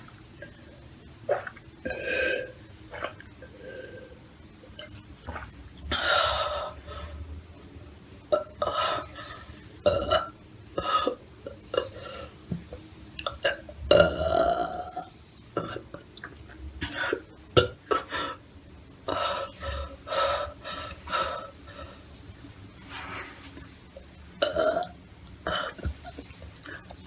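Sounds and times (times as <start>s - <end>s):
person burping: 9.8s - 11.9s, 13.2s - 15.1s, 24.4s - 25.9s.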